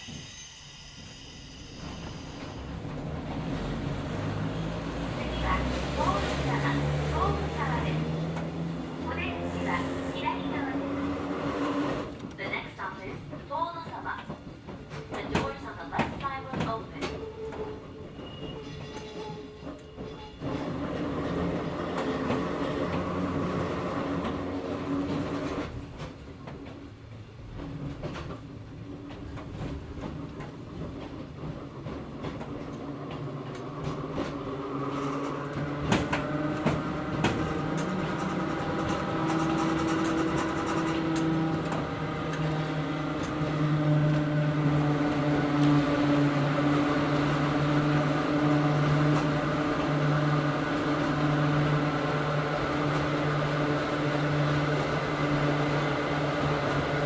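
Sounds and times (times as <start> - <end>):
train motor humming whine: 1.8 - 12.4, 33.6 - 57.0.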